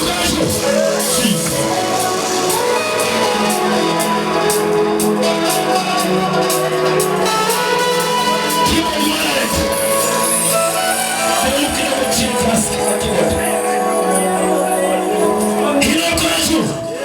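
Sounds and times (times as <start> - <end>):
held chords: 0.0 - 17.0
light percussion beat: 0.0 - 17.0.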